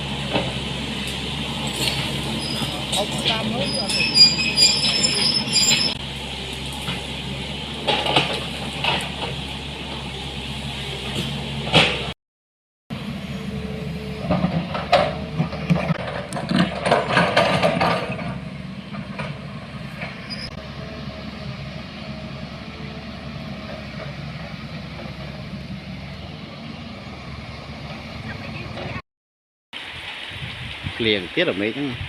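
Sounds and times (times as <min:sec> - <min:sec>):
vehicle engine running: 0:00.0 - 0:03.9, 0:12.9 - 0:29.0
rattling and knocking: 0:14.3 - 0:19.4.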